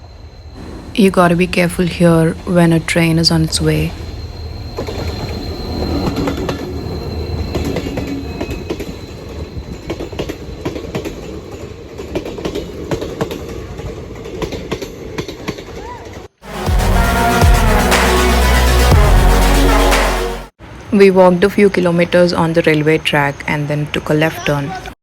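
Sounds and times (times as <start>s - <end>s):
train wheels clattering over rails: 4.7s - 16.3s.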